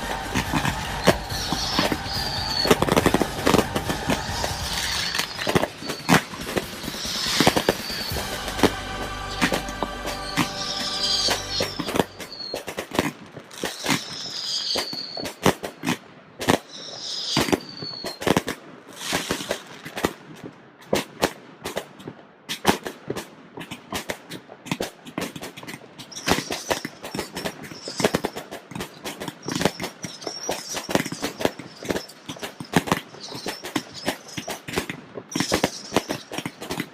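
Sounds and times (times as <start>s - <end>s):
firework whistles: 0.0s - 20.0s, 26.0s - 36.9s
fireworks bangs and crackles: 0.0s - 36.9s.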